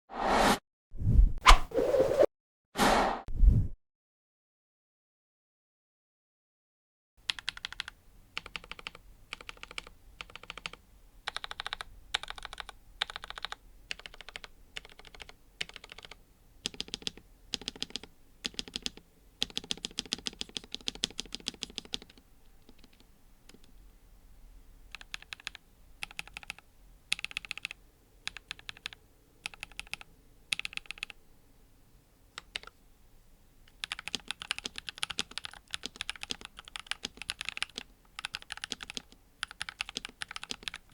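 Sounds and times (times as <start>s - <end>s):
mechanical keyboard typing: 7.3s - 23.7s, 24.9s - 31.2s, 32.4s - 32.8s, 33.7s - 40.9s.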